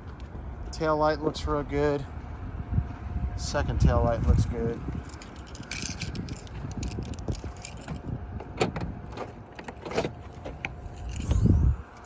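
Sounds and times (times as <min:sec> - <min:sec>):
keys jangling: 0:05.0 - 0:08.1.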